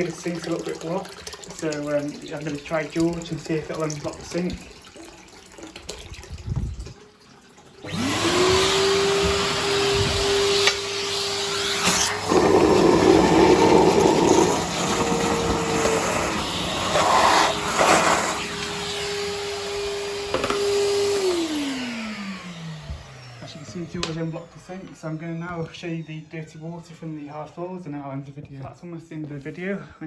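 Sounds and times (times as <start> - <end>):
vacuum sucking at a drain: 7.8 - 23.1
vacuum motor whining: 7.8 - 26.6.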